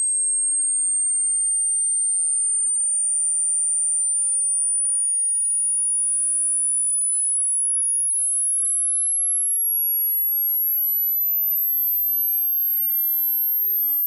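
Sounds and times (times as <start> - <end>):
high sine tone sweep: 0.0 - 7.0, 10.6 - 14.0.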